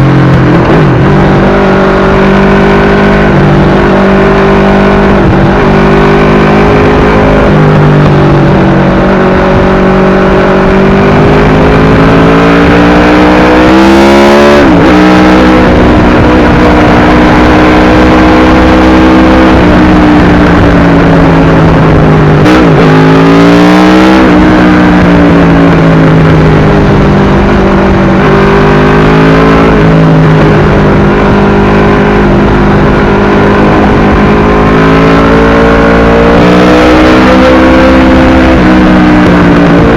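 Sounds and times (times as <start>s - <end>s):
motorcycle engine running loud: 0.0s - 39.9s.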